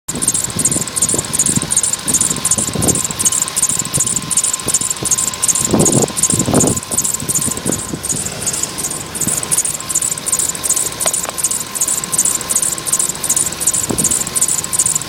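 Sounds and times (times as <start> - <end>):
car engine running: 0.1 - 15.0
drive belt chirping: 0.1 - 15.0.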